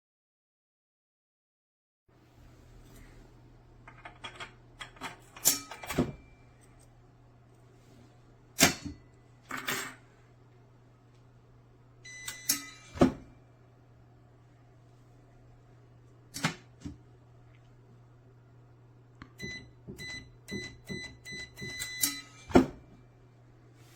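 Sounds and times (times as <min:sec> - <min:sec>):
low electrical hum: 0:02.1 - 0:23.9
brief steady tone: 0:12.1 - 0:12.9, 0:19.4 - 0:23.2.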